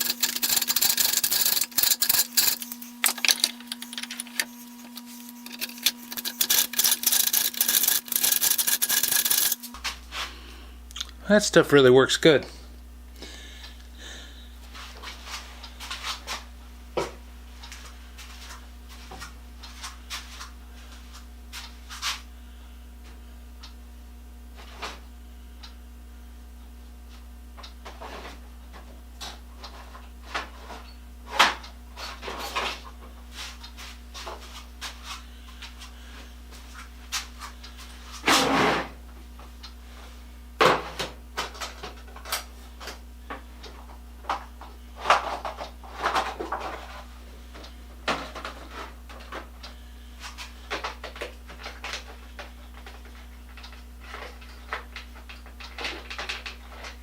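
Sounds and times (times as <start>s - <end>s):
steel tools clinking and scraping: 0.0s - 9.8s
electrical hum: 0.0s - 57.0s.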